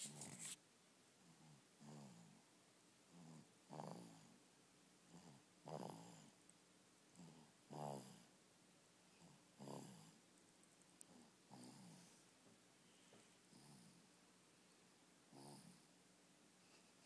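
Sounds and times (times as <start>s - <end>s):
baby snoring softly: 1.2s - 2.4s, 3.1s - 4.4s, 5.1s - 6.4s, 7.2s - 8.3s, 9.1s - 10.2s, 11.0s - 12.2s, 13.0s - 14.0s, 15.3s - 15.9s.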